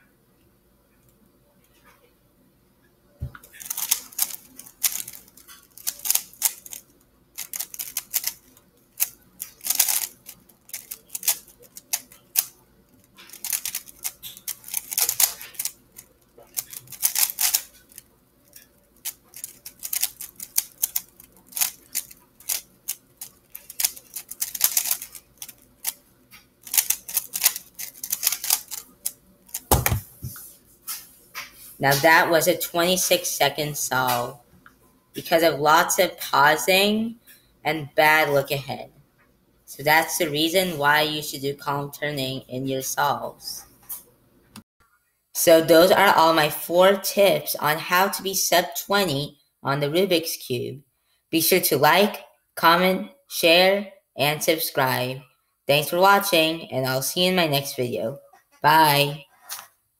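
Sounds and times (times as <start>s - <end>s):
puzzle cube plastic clicking: 3.4s - 6.8s, 7.4s - 26.0s, 26.6s - 30.0s.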